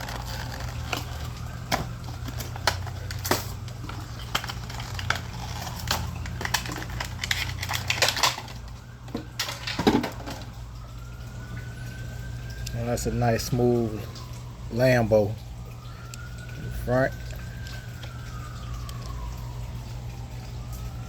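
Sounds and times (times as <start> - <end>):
packaging crinkling and snapping: 0.0 - 11.6, 17.1 - 19.4.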